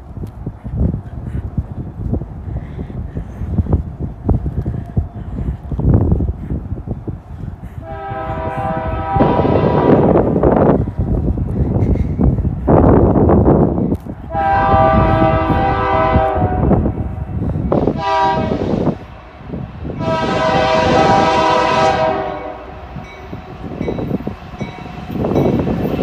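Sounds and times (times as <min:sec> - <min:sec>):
passing train rumble: 0:00.0 - 0:26.0
locomotive air horn blasts: 0:07.8 - 0:10.2, 0:14.3 - 0:16.9, 0:17.9 - 0:19.0, 0:20.0 - 0:22.8.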